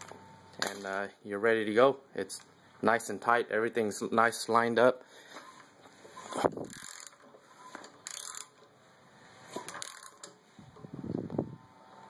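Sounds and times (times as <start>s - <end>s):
wrench scraping: 6.0s - 8.7s.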